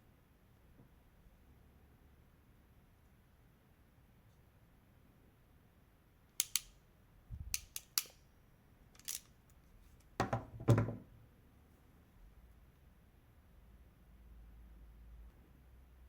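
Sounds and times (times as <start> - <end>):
crimping pliers clicking: 6.4 - 6.7, 7.5 - 8.2, 9.0 - 9.3.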